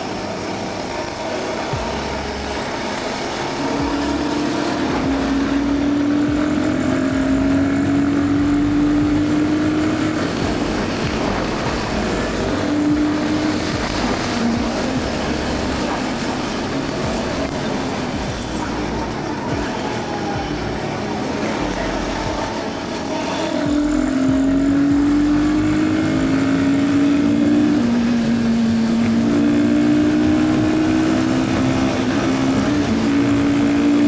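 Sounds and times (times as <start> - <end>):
wind rush on microphone: 0.0 - 24.4
motorcycle engine running: 0.0 - 34.0
rising tone: 0.0 - 34.0.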